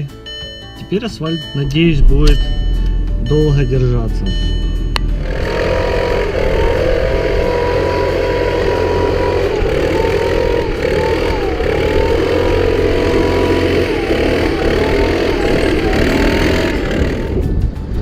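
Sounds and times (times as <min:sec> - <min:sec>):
thin whine: 0:00.0 - 0:18.0
car driving on road: 0:01.3 - 0:18.0.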